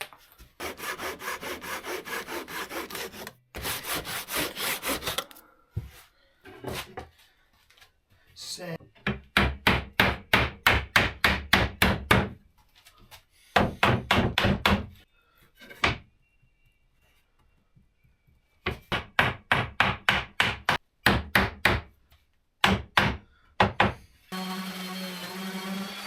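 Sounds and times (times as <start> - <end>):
hammer striking wood: 9.0 - 12.4, 18.7 - 21.9, 22.6 - 24.0.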